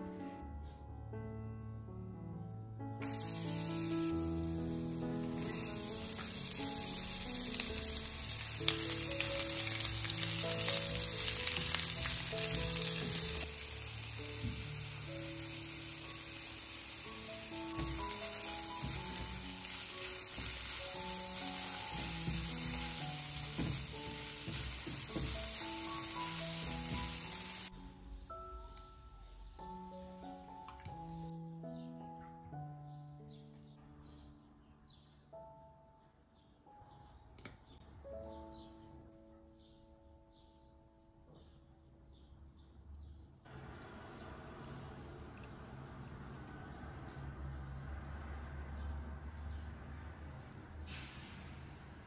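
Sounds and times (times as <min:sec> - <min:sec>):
background music with melody: 0:00.0 - 0:42.2
steady sizzle: 0:03.0 - 0:27.8.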